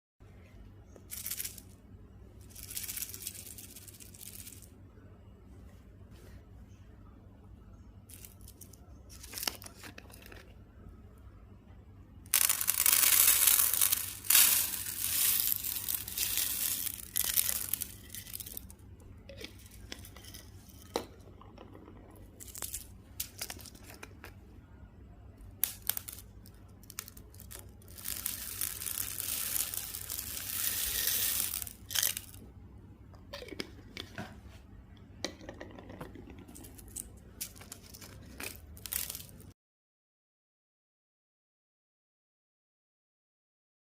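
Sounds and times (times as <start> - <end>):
plastic rustling: 12.3 - 18.7, 25.6 - 32.4, 36.4 - 39.5
plastic wrappers tearing: 12.3 - 18.7, 26.8 - 32.4, 36.8 - 39.4.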